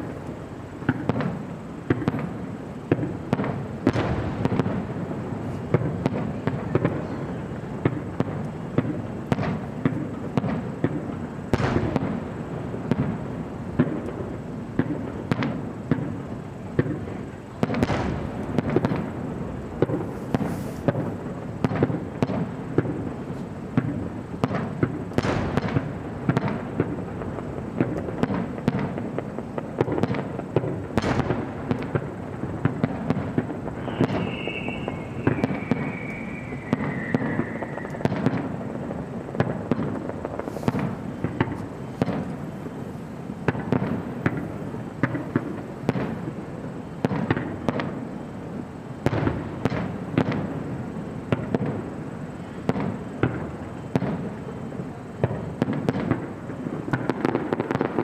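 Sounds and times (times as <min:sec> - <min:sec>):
fireworks bangs: 0:00.0 - 0:58.0
fireworks crackling: 0:00.0 - 0:58.0
falling whistle: 0:33.8 - 0:38.2.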